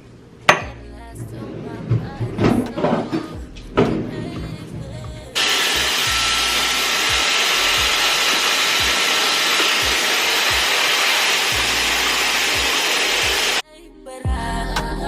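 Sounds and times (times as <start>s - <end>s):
music with thumping beat: 2.0s - 5.4s
hair dryer blowing: 5.4s - 13.6s.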